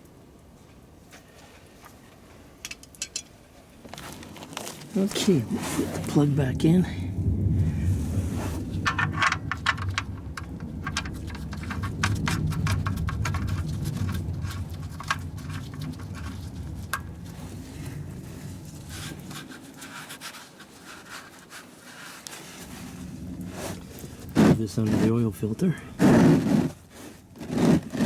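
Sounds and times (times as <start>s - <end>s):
wrench clicks and scrapes on metal: 2.6s - 3.3s, 8.9s - 17.0s
low rumble: 5.1s - 19.4s, 22.6s - 26.1s.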